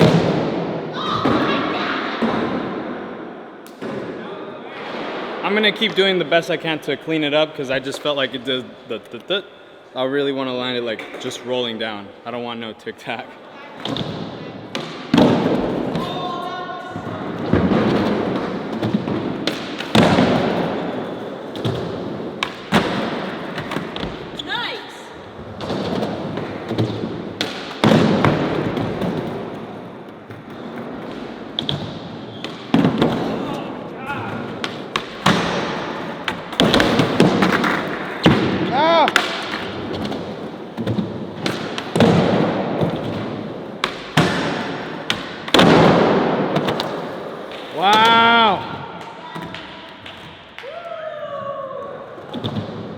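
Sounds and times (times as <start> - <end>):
skateboard clacks and landing thuds: 17.0 - 24.4, 25.5 - 33.5, 34.4 - 48.2
skateboard wheels rolling: 25.2 - 48.7
skateboard rolling: 34.4 - 45.1.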